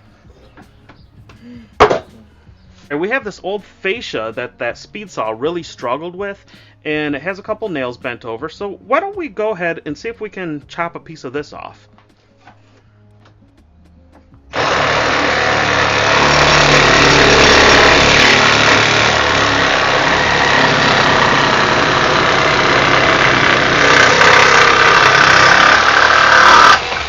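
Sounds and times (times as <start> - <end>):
reciprocating saw cutting wood: 14.5 - 27.0.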